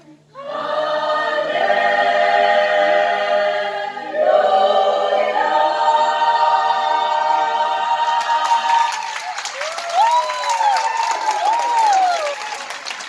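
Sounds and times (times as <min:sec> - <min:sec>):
choir singing sustained chords: 0:00.0 - 0:09.3.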